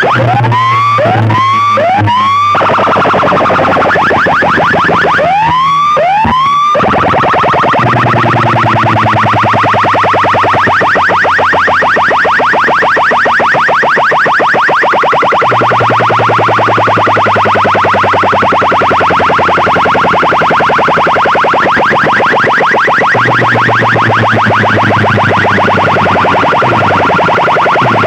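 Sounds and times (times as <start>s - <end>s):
rapid rising electronic chirps: 0.0s - 28.0s
steady low bass tone: 0.2s - 6.5s, 7.6s - 10.8s, 23.2s - 28.0s.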